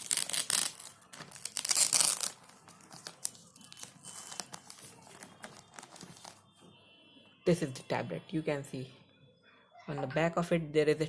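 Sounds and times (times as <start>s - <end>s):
packaging ripping and crinkling: 0.0s - 6.4s
packaging rustling: 0.0s - 6.4s.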